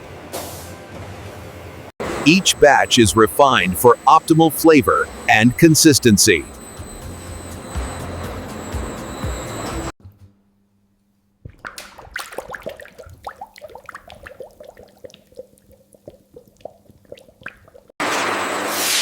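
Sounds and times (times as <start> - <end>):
loud machine noise: 2.0 - 9.9
liquid plopping and dripping: 11.4 - 17.9.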